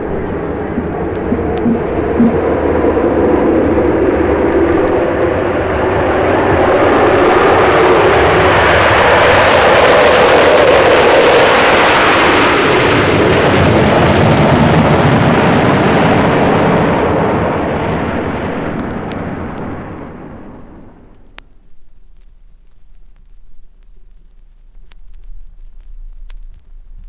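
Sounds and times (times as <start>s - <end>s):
jet engine roar: 0.0s - 21.2s.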